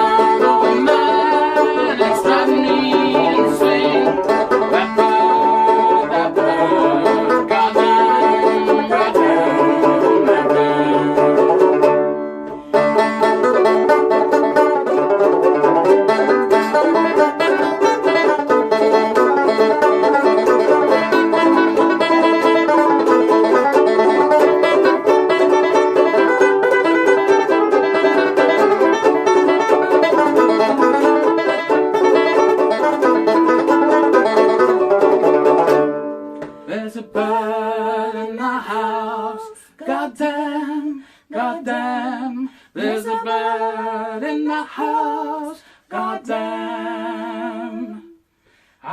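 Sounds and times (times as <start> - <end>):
plucked string instruments: 0.0 - 38.2.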